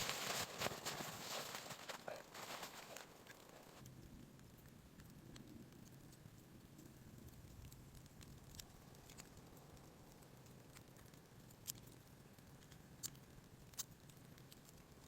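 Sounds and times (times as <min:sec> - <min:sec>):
fire pops: 0:00.0 - 0:03.9
wood fire crackling: 0:00.0 - 0:15.0.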